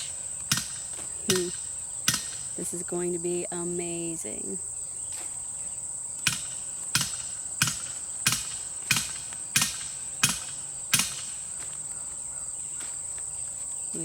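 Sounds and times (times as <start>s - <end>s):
hammering blows: 0.0s - 2.8s, 6.2s - 11.8s
high-pitched insect chorus: 0.0s - 14.0s.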